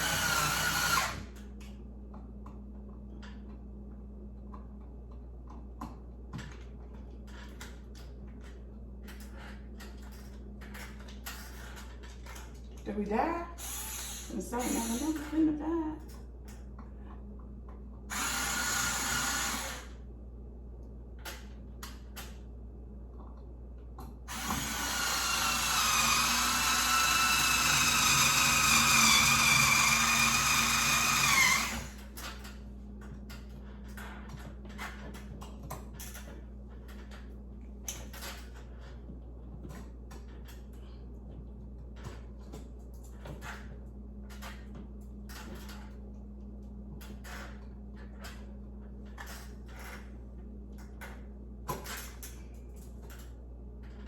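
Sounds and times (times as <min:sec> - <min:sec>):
power drill whining: 0:00.0 - 0:01.3, 0:13.6 - 0:15.2, 0:18.1 - 0:20.0, 0:24.3 - 0:32.0.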